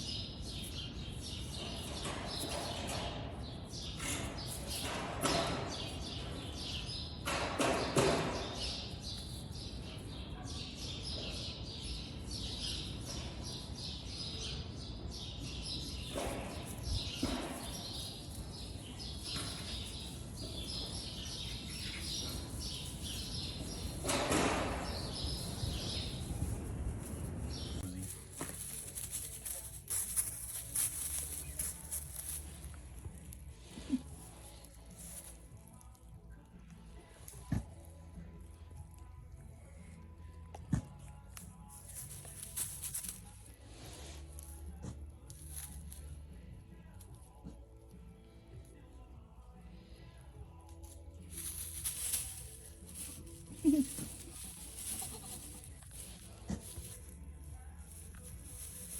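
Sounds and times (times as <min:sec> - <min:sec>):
small birds chirping: 0:00.0 - 0:37.1, 0:51.2 - 0:58.9.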